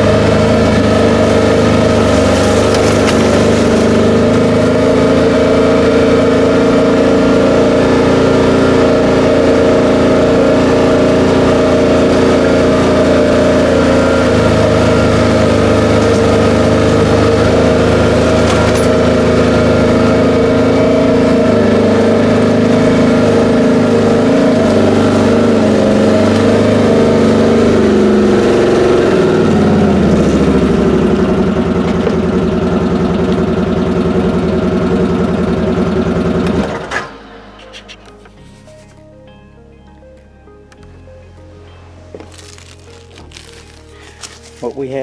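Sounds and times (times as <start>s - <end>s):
vehicle engine running: 0.0s - 40.0s, 40.7s - 45.0s.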